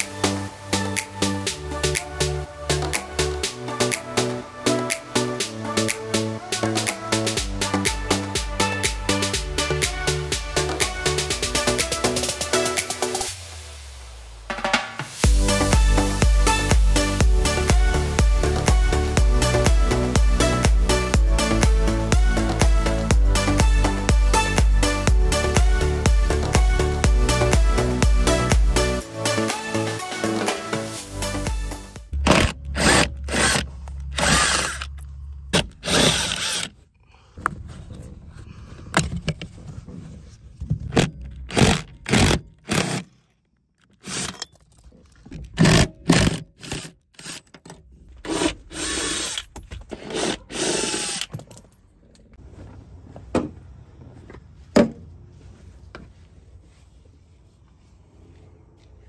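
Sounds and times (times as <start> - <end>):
power drill bursts: 32.3 - 35.0, 35.8 - 36.7, 48.3 - 51.3.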